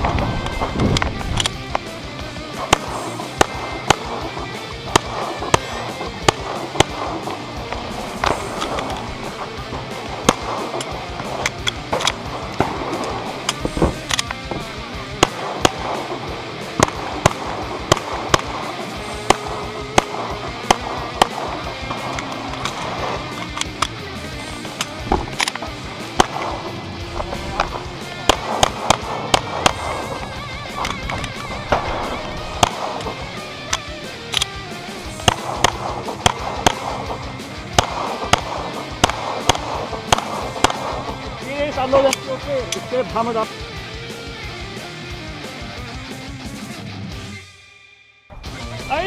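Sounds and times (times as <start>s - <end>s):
pistol shots: 0.0s - 42.9s
background music: 0.0s - 49.0s.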